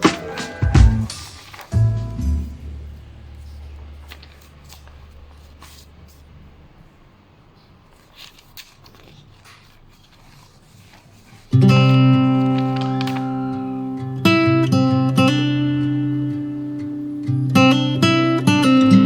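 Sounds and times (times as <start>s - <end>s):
acoustic guitar chord: 11.6s - 19.0s.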